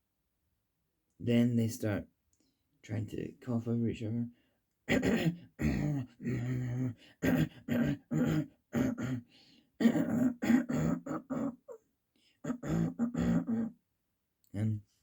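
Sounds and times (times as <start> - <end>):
man coughing: 9.8 - 11.6, 12.5 - 13.7.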